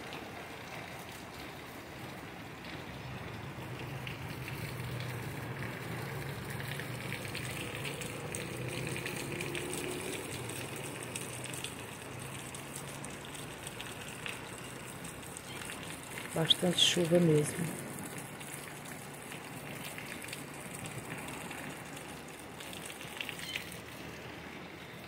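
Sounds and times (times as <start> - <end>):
heavy rain falling: 0.0 - 25.0.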